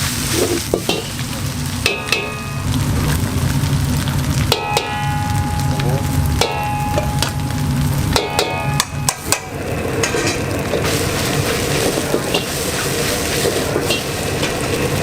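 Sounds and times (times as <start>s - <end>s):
rice sizzling in a pan: 0.0s - 15.0s
metal spatula scraping a pan: 9.1s - 14.6s.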